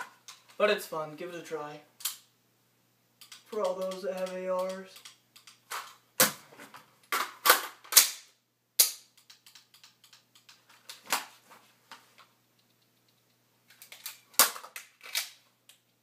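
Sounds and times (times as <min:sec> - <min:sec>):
magazines going in and out: 0:09.2 - 0:16.0.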